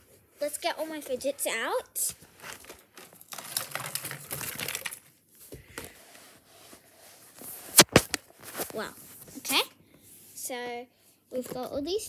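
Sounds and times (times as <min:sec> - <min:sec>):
plastic toys clattering: 0:02.6 - 0:05.1.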